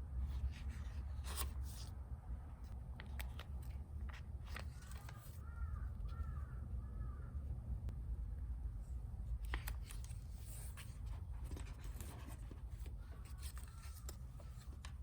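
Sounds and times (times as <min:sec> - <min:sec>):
low steady hum: 0:00.0 - 0:15.0
paper pages turning: 0:00.3 - 0:01.9, 0:03.0 - 0:05.5, 0:09.4 - 0:15.0
crow cawing: 0:05.1 - 0:07.4.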